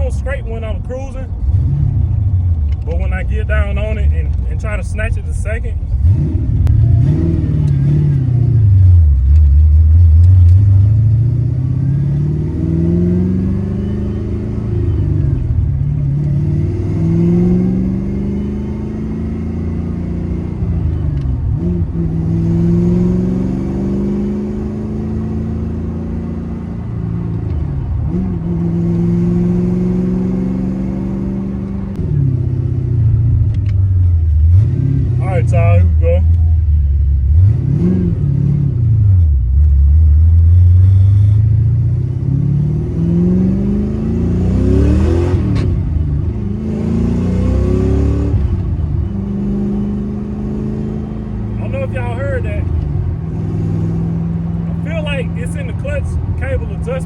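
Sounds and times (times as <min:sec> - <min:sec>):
car engine revving through gears: 0:00.2 - 0:04.4, 0:05.8 - 0:57.0.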